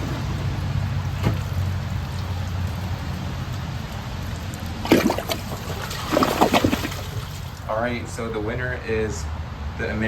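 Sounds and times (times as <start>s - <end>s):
toilet tank refilling: 4.4s - 7.6s.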